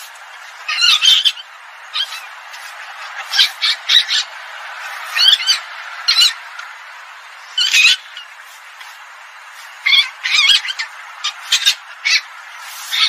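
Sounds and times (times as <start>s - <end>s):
steady hiss: 0.0s - 13.0s
harsh squawking animal cries: 0.6s - 6.5s, 7.5s - 8.4s, 9.6s - 13.0s.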